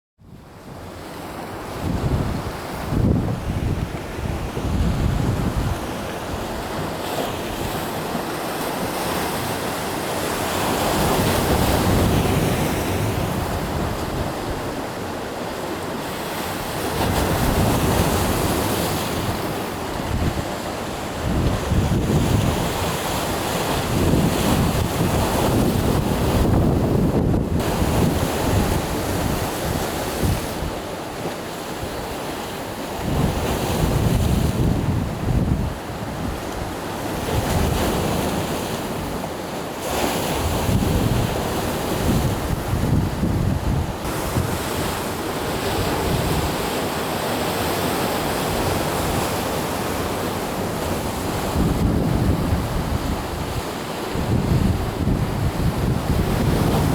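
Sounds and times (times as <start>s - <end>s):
sea waves washing ashore: 0.4s - 56.9s
wind buffeting microphone: 1.7s - 6.9s, 16.8s - 30.8s, 33.0s - 38.0s, 40.4s - 46.8s, 48.4s - 56.9s.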